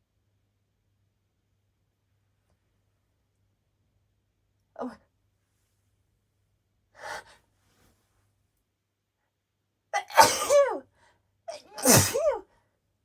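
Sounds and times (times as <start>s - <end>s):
woman sneezing: 10.0s - 10.8s, 11.6s - 12.4s.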